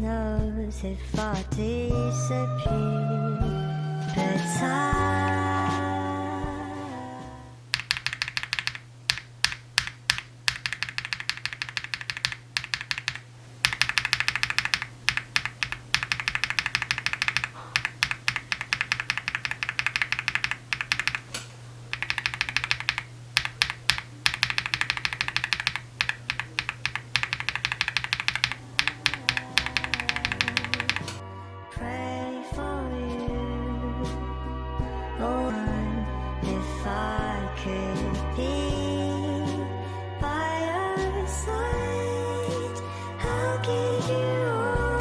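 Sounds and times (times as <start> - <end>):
steady low hum: 4.0 - 31.2
mechanical keyboard typing: 7.7 - 31.2.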